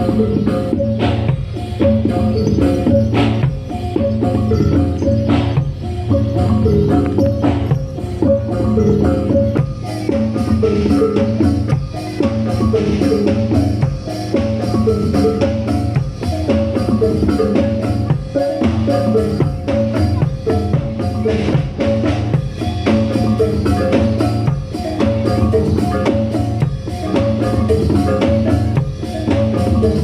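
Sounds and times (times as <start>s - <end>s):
drum strokes: 0.0s - 30.0s
gamelan percussion: 0.0s - 30.0s.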